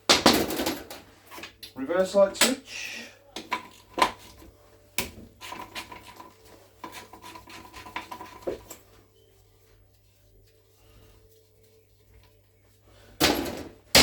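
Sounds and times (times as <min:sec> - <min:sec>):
metal tools clinking and scraping: 0:03.4 - 0:04.5, 0:05.4 - 0:09.0.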